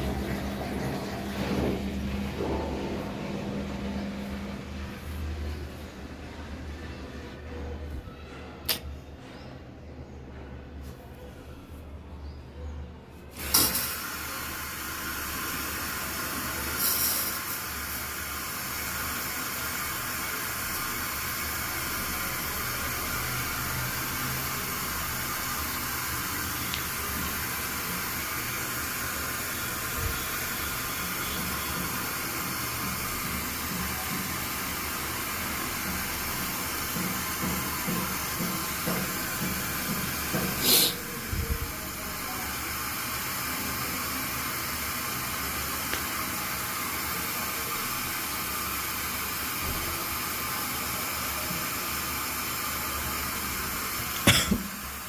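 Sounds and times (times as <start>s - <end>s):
water running: 0.0s - 4.6s, 13.4s - 51.1s.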